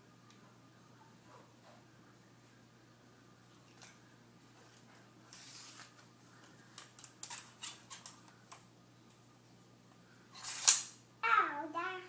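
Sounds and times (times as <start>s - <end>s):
tape measure blade swish: 10.4s - 11.0s
tape measure clicks and rattles: 10.4s - 11.0s.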